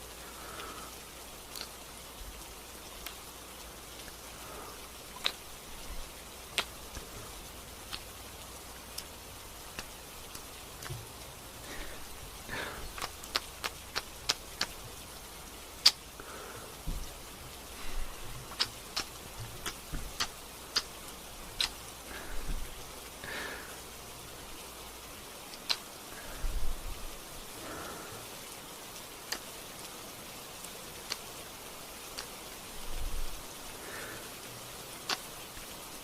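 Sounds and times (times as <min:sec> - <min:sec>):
gentle rain: 0:00.0 - 0:36.0
sharp clicks: 0:21.6 - 0:21.8.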